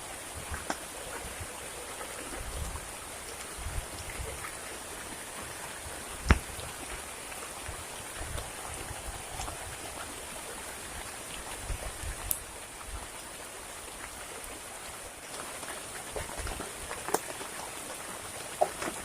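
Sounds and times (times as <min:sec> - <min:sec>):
heavy rain falling: 0:00.0 - 0:19.0
sharp tap: 0:06.2 - 0:06.5.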